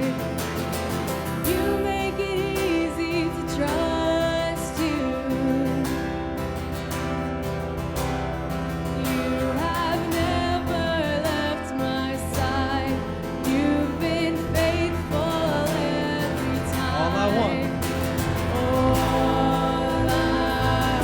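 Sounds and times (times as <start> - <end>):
worship band playing slow song: 13.8 - 21.0.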